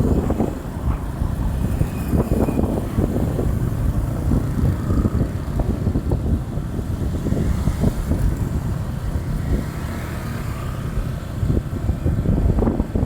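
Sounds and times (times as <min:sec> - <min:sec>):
bus engine rumbling: 0:00.0 - 0:09.6.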